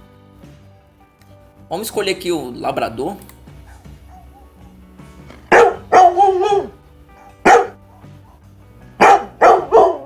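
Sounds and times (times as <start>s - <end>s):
dog barking: 3.6s - 10.0s.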